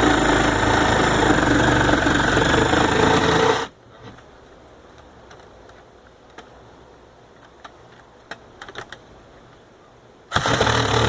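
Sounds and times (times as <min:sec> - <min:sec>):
faint steady background: 0:00.0 - 0:11.0
light clicks and taps: 0:04.9 - 0:06.6.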